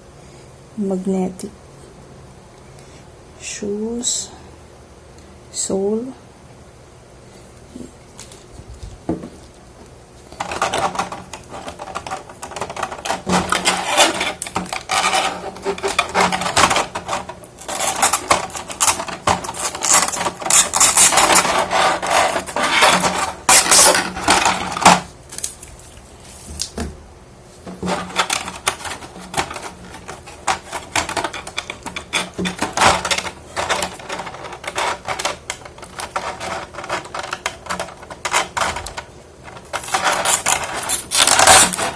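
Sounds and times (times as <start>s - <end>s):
plastic parts clicking and clattering: 10.3s - 25.6s, 27.7s - 41.9s.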